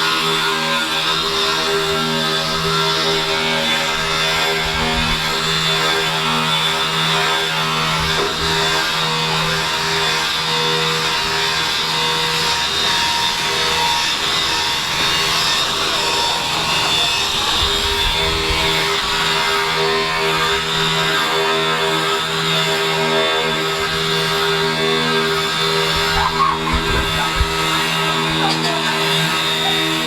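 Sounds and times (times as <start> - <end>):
pitched machinery hum: 12.6 - 30.0.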